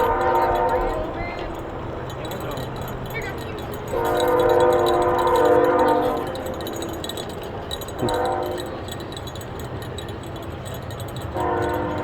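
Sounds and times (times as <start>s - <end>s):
distant train horn blasts: 0.0s - 1.6s, 3.9s - 6.6s, 8.0s - 8.8s, 11.4s - 12.0s.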